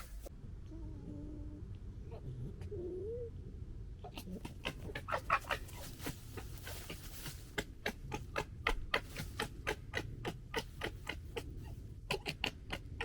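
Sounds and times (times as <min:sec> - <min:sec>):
fox cubs chattering calls: 0:04.1 - 0:13.0.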